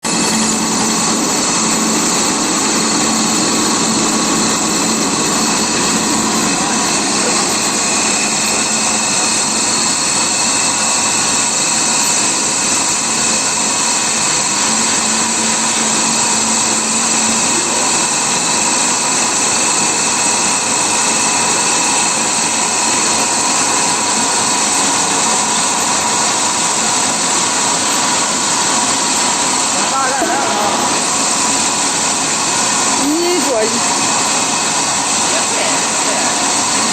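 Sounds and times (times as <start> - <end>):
extruder machine running: 0.0 - 36.9.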